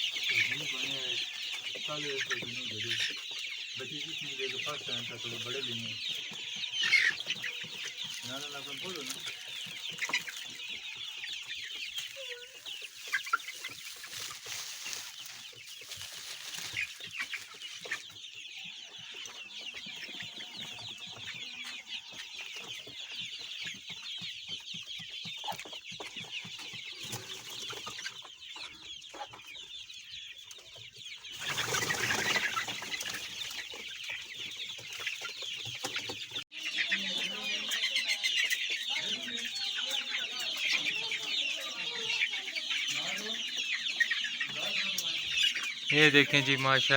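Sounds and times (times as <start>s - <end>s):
chickens clucking and chirping: 0.0s - 46.9s.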